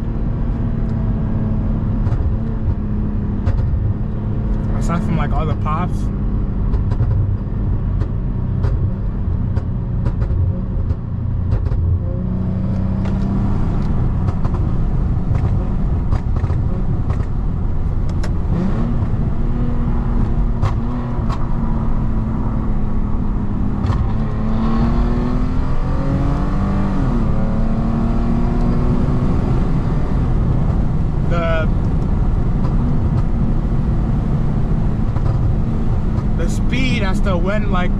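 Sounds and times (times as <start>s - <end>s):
car engine revving: 0.0s - 37.9s
exhaust pops: 3.4s - 3.9s.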